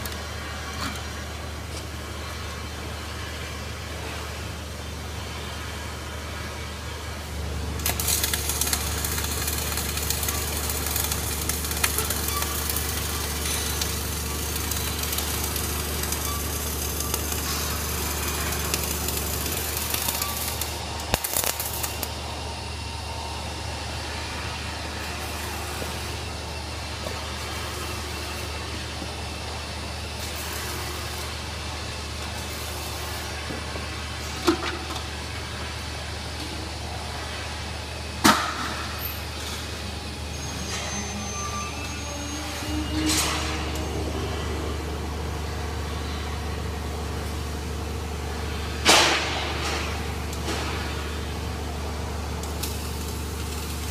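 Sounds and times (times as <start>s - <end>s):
welding arc crackling: 7.3s - 22.3s, 42.6s - 53.9s
low hum: 42.2s - 53.9s.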